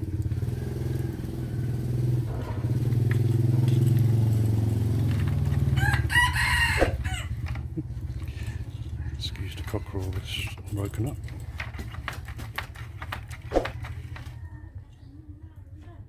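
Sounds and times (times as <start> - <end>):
low motor hum: 0.0 - 16.0
rooster crowing: 5.6 - 7.5.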